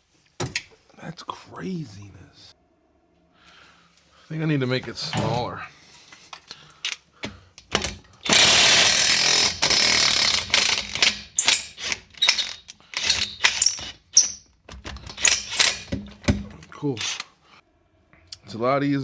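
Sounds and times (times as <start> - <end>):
impact wrench hammering: 7.2 - 17.3.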